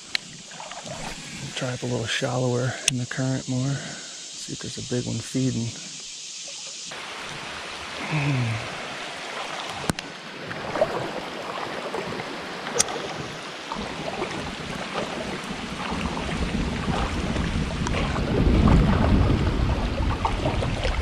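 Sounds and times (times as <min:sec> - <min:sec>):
creek water flowing: 0:00.0 - 0:21.0
wind buffeting microphone: 0:12.0 - 0:21.0.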